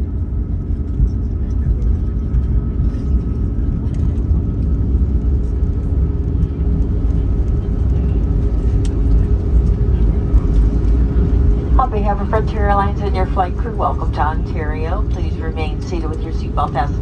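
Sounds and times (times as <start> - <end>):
airliner cabin rumble: 0.0 - 17.0
faint steady whine: 6.4 - 17.0.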